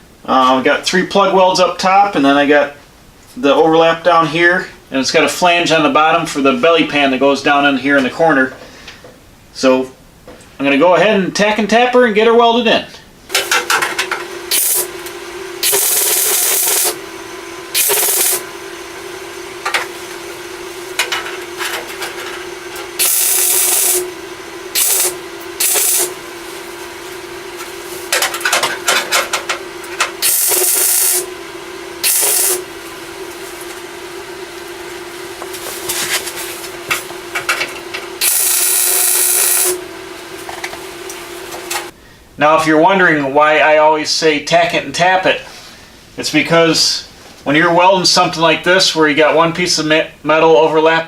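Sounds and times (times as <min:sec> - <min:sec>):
steady hum: 0:00.0 - 0:50.3
welding crackling bursts: 0:13.3 - 0:17.0, 0:17.6 - 0:31.3, 0:31.9 - 0:39.8.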